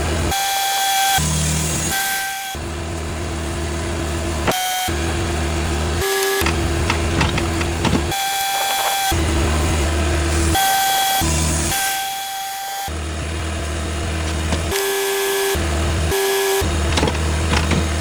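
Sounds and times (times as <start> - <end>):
band sawmill running: 0.0 - 18.0.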